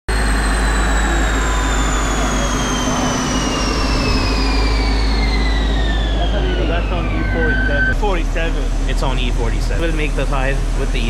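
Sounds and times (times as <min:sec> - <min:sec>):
car engine rumbling on dyno: 0:00.1 - 0:11.0
drivetrain whine falling in pitch: 0:00.1 - 0:11.0.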